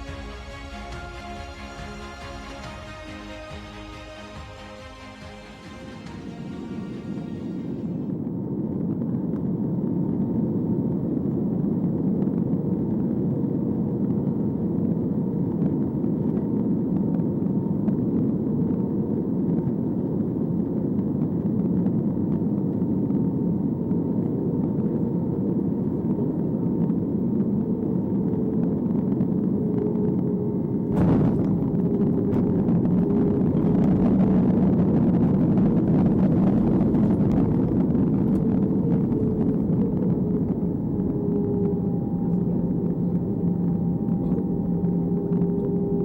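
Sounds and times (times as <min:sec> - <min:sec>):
jet engine drone in cabin: 0:00.0 - 0:46.0.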